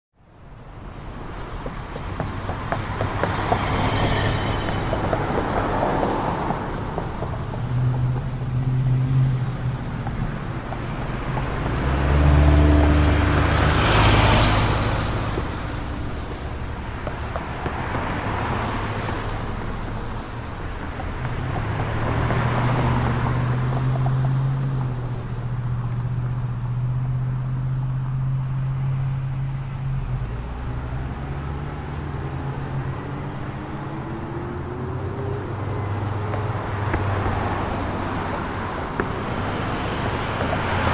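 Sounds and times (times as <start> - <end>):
traffic engine hum: 0.2 - 40.9
vehicles passing: 0.2 - 40.9
engine speeding up: 10.8 - 15.8.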